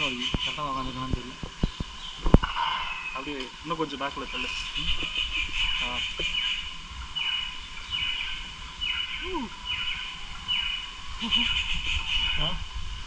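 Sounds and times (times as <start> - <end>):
background hiss: 0.0 - 13.0
high falling chirp: 2.1 - 3.4, 4.2 - 12.6.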